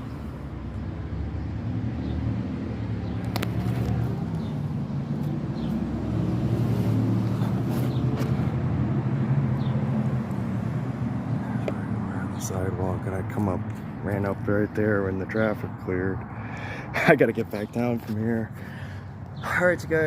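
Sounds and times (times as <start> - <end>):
car engines passing by: 0.0 - 20.0.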